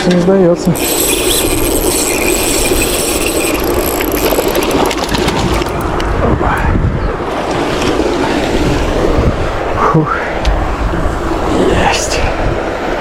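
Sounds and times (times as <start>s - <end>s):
wind rumbling on microphone: 0.0s - 13.0s
fishing reel whirring: 0.8s - 5.8s.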